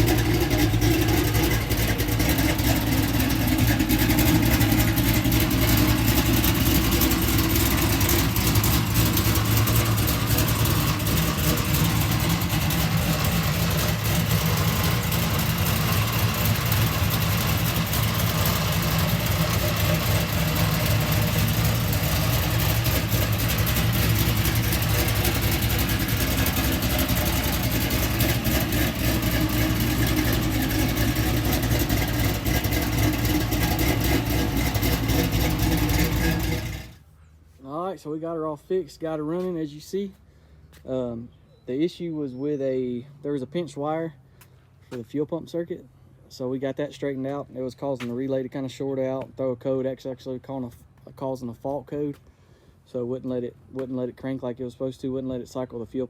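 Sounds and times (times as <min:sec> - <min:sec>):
car engine idling: 0:00.0 - 0:37.1.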